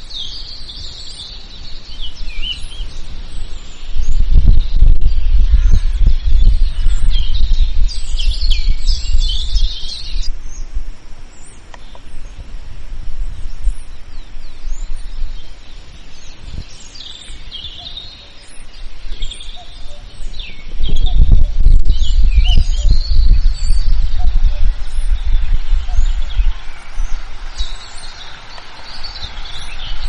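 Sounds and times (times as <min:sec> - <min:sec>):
birds chirping: 0:00.0 - 0:30.0
steady outdoor hiss: 0:00.0 - 0:30.0
low rumble: 0:02.1 - 0:11.2, 0:18.7 - 0:30.0.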